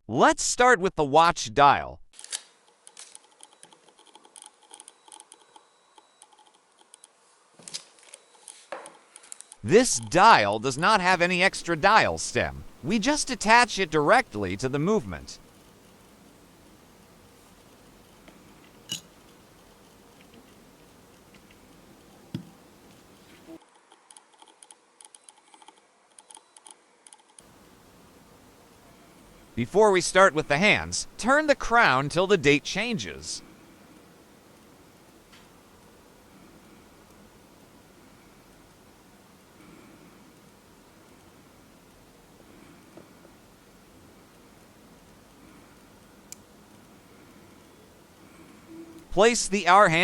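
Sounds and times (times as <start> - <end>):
watch parts clicking: 18.4 - 23.4.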